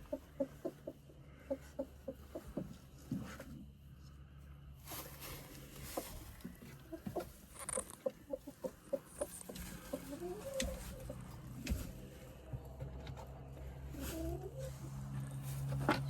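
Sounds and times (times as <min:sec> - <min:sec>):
hen clucking: 0:00.0 - 0:02.8, 0:05.8 - 0:12.0, 0:13.9 - 0:14.8.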